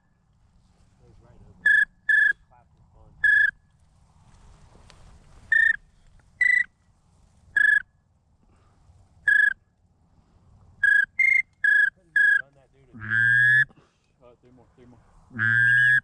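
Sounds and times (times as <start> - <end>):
duck whistle call: 1.6 - 2.4, 3.2 - 3.6, 5.5 - 5.8, 6.4 - 6.7, 7.6 - 7.9, 9.3 - 9.6, 10.8 - 12.4, 13.0 - 13.7, 15.4 - 16.0.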